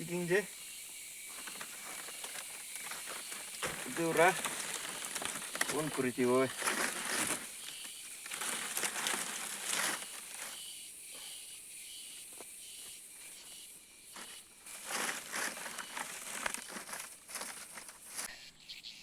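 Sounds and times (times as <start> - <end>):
insects chirping: 0.0 - 19.0
rustling and scraping: 1.3 - 10.6, 14.1 - 18.3.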